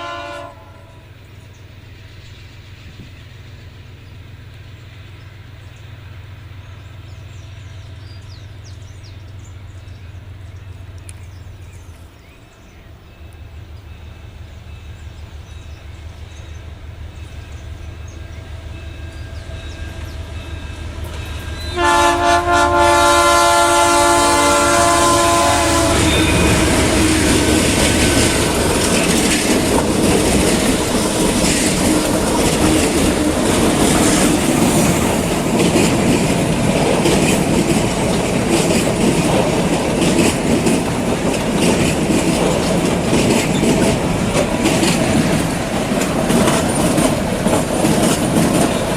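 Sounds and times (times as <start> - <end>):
train air horn: 0.0 - 1.1, 20.6 - 29.0
diesel locomotive rumble: 0.0 - 48.9
wagons clattering over rail joints: 25.9 - 48.9.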